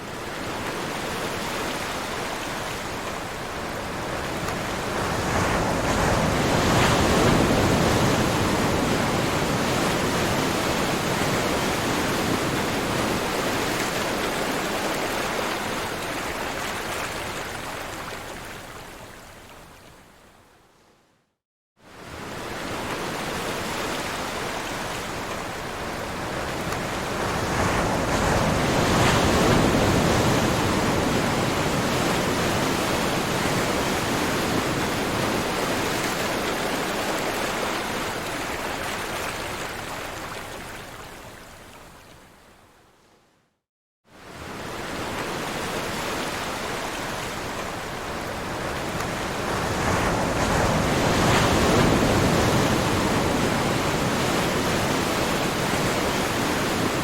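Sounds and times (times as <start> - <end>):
ocean waves surf rush: 3.9 - 17.1, 22.0 - 40.4, 44.2 - 57.0.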